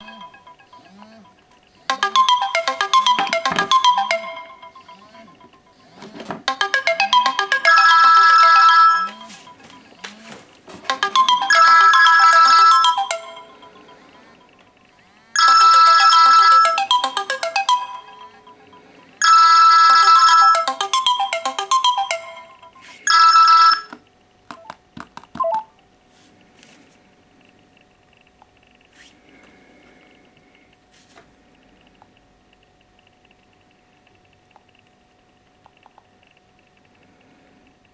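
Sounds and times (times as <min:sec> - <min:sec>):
phone alarm melody: 0:00.0 - 0:24.0
phone ringtone: 0:00.0 - 0:24.0.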